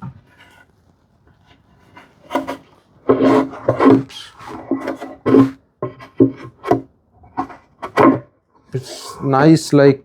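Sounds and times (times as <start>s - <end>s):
wood rubbing against wood: 1.5s - 9.3s.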